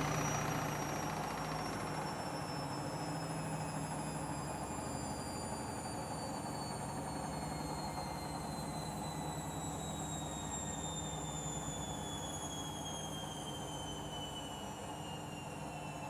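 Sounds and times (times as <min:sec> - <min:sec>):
washing machine motor whine: 0:00.0 - 0:16.0.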